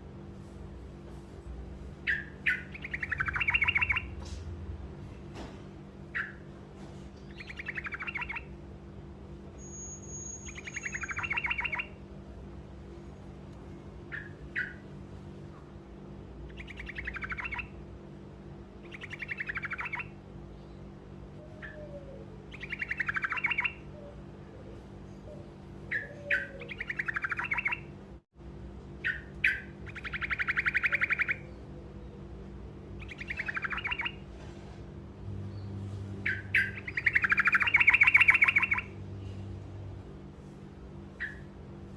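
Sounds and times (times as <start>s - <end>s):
steady low hum: 0.0s - 41.9s
bird singing rolling trills: 2.0s - 4.2s, 6.1s - 6.5s, 7.2s - 12.2s, 14.0s - 15.1s, 16.4s - 28.0s, 28.9s - 34.2s, 35.3s - 39.1s, 41.0s - 41.8s.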